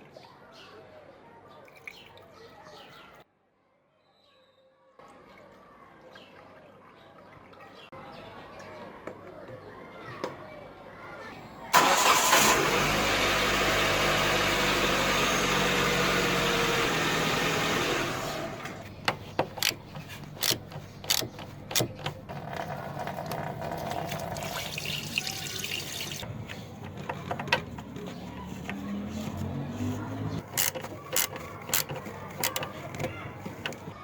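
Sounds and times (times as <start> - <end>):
sharp clicks and knocks: 18.8 - 23.5, 30.4 - 34.0.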